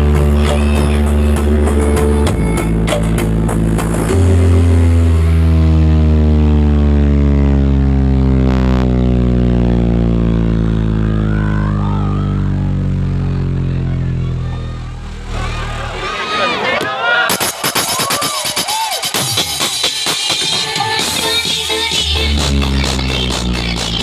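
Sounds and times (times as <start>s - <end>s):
deep bass note sliding down: 0.0s - 16.6s
heavy bass electronic music: 0.0s - 24.0s.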